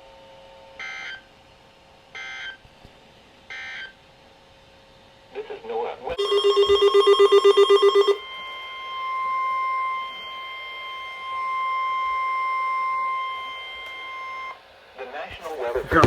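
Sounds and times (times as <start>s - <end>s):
rapid pulsing alarm beeps: 6.2s - 14.5s
steady warning alarm tone: 6.2s - 14.6s.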